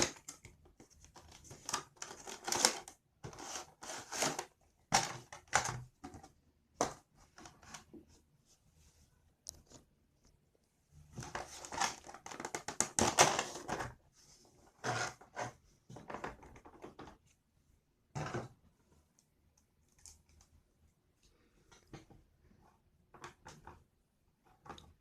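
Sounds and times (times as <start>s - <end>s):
packaging rustling and crinkling: 1.0s - 5.8s, 11.2s - 13.9s.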